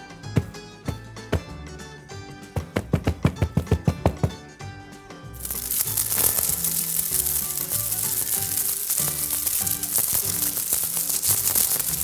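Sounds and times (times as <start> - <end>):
background music: 0.0 - 12.0
sizzling and crackling: 5.4 - 12.0.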